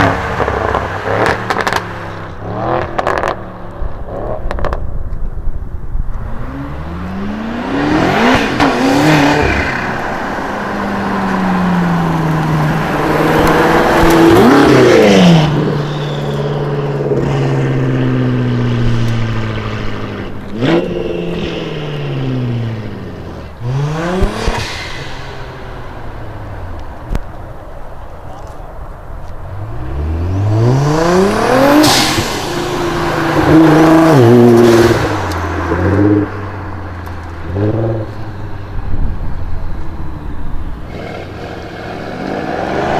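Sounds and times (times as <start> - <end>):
car engine revving: 0.0 - 5.0, 6.1 - 42.9
exhaust cracks: 8.2 - 42.4.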